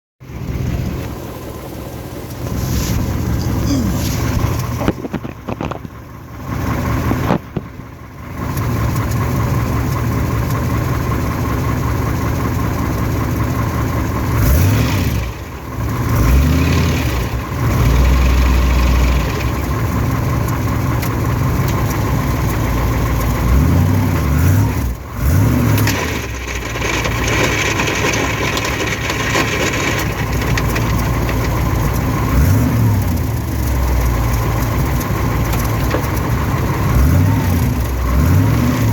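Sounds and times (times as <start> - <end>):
transmission grinding noise: 2.3 - 6.0, 24.2 - 38.9
engine revving: 14.2 - 20.2, 21.0 - 28.1, 28.9 - 38.9.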